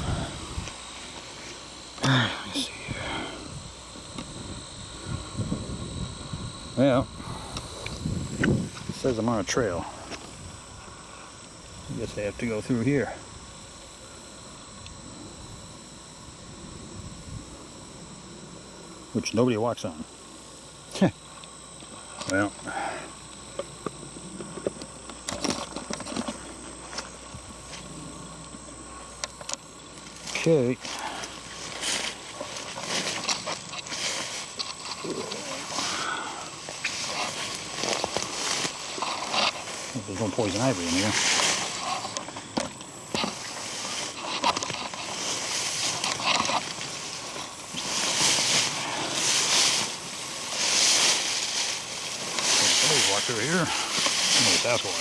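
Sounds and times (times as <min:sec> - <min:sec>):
leaves rustling: 0:29.9 - 0:55.0
footsteps through undergrowth: 0:30.0 - 0:55.0.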